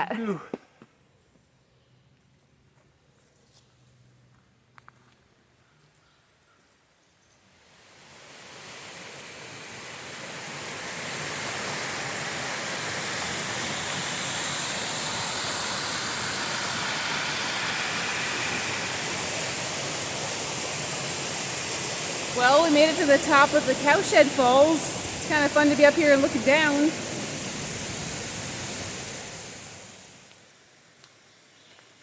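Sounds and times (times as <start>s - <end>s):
waterfall rushing: 7.8s - 30.3s.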